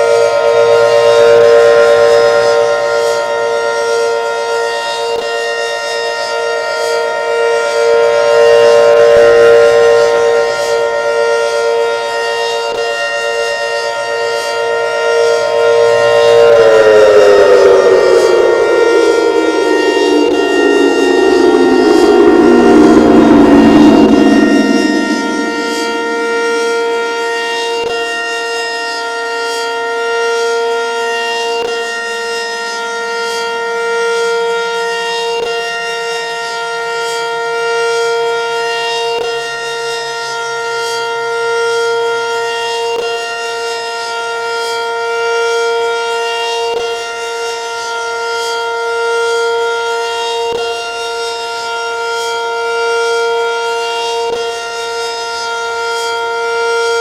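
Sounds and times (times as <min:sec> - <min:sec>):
lower tone sliding down: 0:00.0 - 0:28.0, 0:47.8 - 0:57.0
warning siren steady tone: 0:00.0 - 0:28.5, 0:44.1 - 0:57.0.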